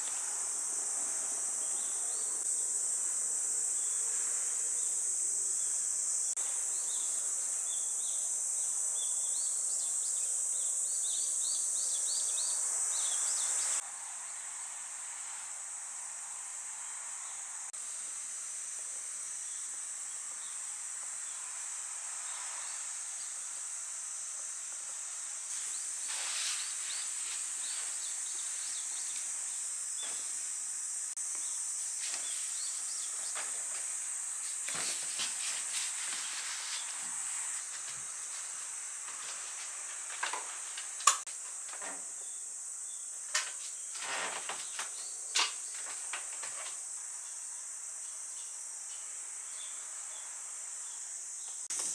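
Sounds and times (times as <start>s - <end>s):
insects chirring: 0.0s - 51.9s.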